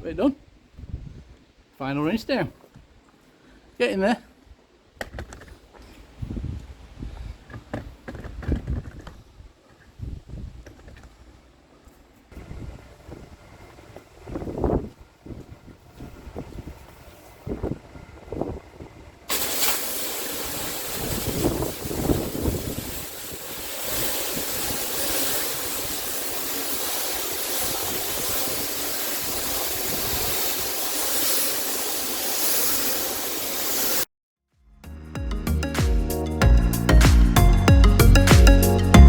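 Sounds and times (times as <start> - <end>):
pressure washer jet spraying: 19.3 - 34.1.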